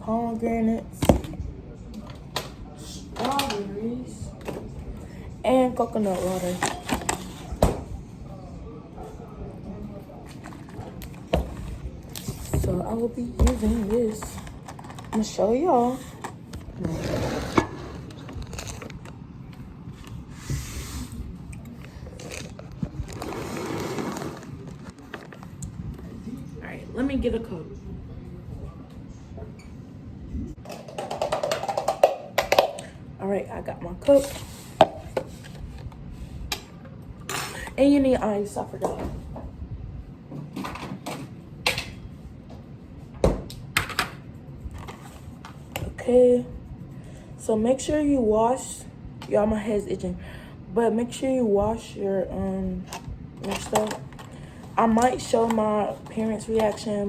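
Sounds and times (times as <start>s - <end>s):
crinkly rustling and scraping: 13.5s - 20.3s, 21.7s - 26.1s
kitchen things clicking and knocking: 30.6s - 32.9s.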